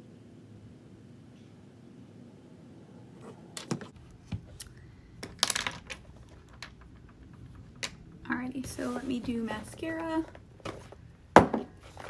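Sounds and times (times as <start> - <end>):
plastic items clicking and clattering: 5.2 - 8.0.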